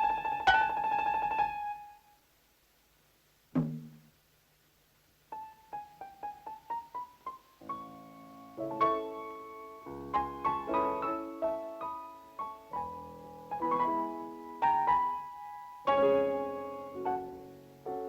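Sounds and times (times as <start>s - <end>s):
piano cartoon music: 0.0s - 1.9s, 5.4s - 18.0s.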